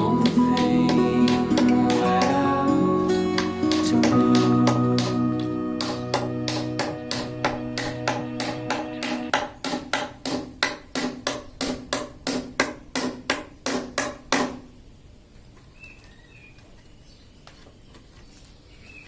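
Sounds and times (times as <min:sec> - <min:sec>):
hammer blows with ringing: 0:03.2 - 0:09.4.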